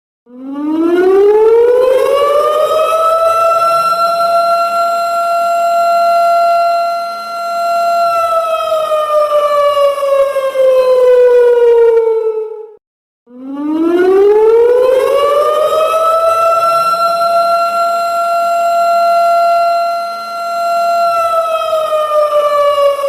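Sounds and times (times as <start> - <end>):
alarm siren slow wail: 0.3 - 23.0.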